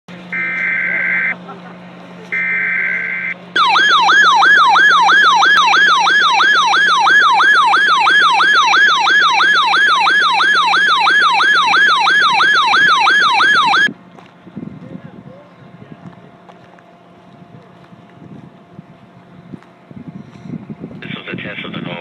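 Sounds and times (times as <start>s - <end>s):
buzzing digital header burst: 0.3s - 1.4s, 2.3s - 13.9s
warbling alert siren: 0.3s - 1.4s, 2.3s - 14.0s.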